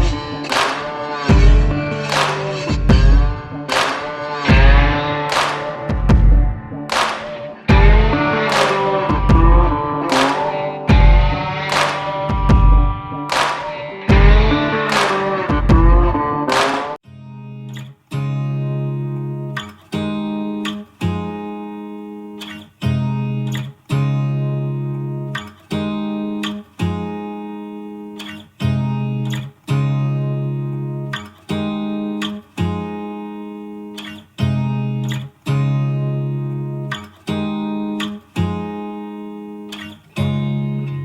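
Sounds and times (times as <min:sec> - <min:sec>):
guitar chords ringing: 0:00.0 - 0:41.0.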